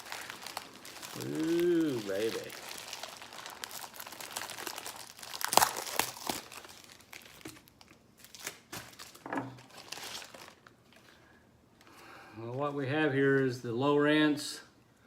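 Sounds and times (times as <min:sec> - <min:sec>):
packing material crinkling: 0:00.0 - 0:11.1.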